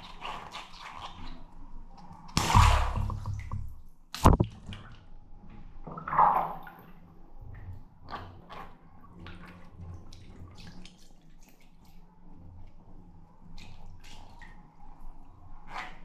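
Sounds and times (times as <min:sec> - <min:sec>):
balloon popping: 0:02.4 - 0:04.7
watery splash: 0:02.4 - 0:05.0.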